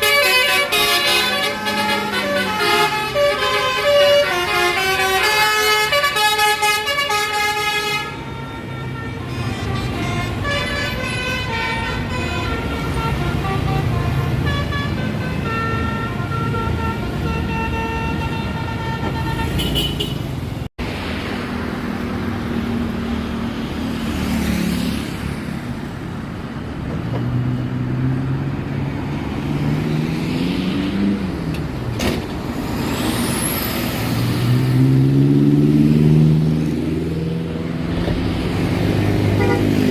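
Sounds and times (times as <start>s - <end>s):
multi-tone bus horn playing a tune: 0.0s - 20.2s, 39.2s - 39.9s
bus engines revving: 0.0s - 39.9s.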